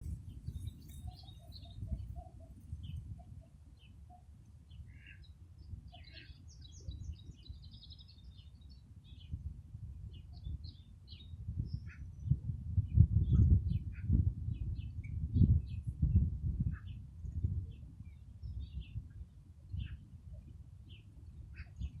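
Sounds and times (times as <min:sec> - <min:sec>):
songbirds chirping and singing: 0:00.0 - 0:09.4.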